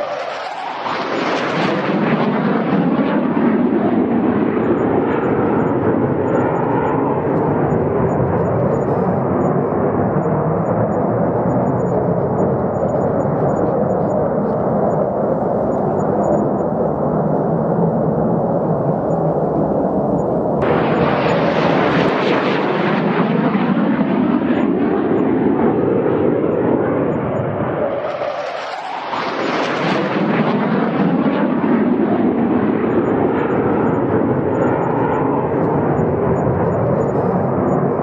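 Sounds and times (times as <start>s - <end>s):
jet engine roar: 0.0s - 38.0s.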